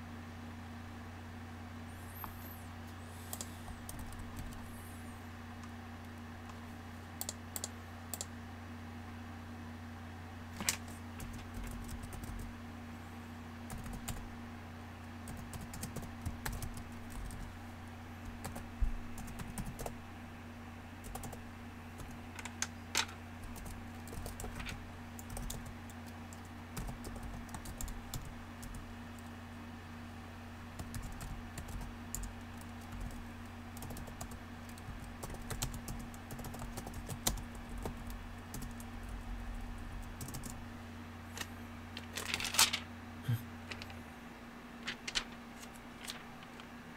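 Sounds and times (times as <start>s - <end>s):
steady low hum: 0.0s - 46.9s
typing on computer keyboard: 21.0s - 21.4s, 23.4s - 24.6s, 25.2s - 25.7s, 33.8s - 38.9s, 40.2s - 40.6s.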